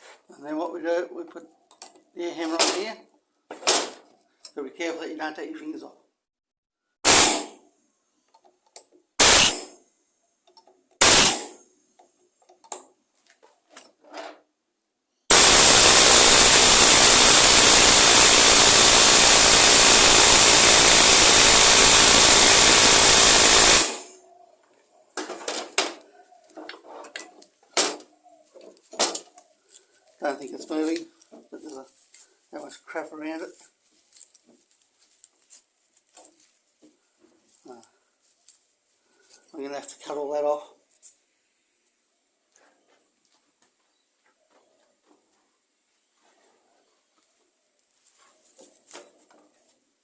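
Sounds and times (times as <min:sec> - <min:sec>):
pneumatic air hammer: 0:07.0 - 0:07.7, 0:09.2 - 0:09.8, 0:11.0 - 0:11.7, 0:15.3 - 0:24.2.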